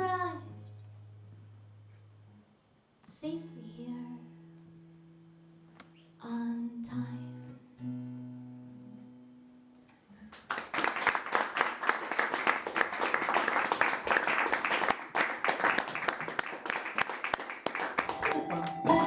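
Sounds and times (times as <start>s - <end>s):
audience applause: 10.4s - 19.0s
acoustic guitar chord ringing: 18.1s - 19.0s.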